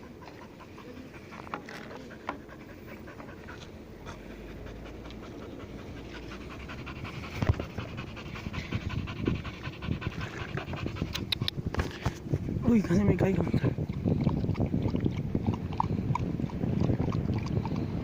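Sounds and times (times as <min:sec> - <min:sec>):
dog panting: 0:00.0 - 0:12.2.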